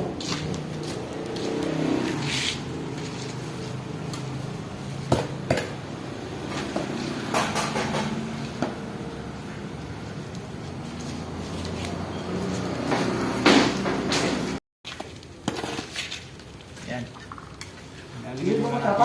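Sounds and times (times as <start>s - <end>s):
tools scraping: 0.2s - 3.9s, 10.7s - 16.3s.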